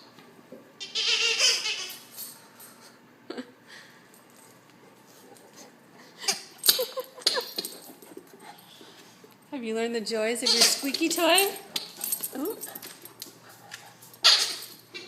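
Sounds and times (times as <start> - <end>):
squeaky dog toy squeaking: 0.8 - 2.1, 10.4 - 11.0, 14.2 - 14.7.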